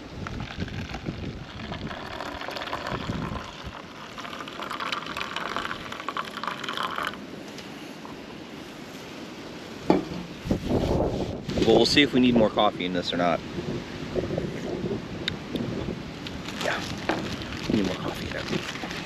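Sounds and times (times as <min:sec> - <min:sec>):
hot water pouring into cup: 0:00.2 - 0:07.2.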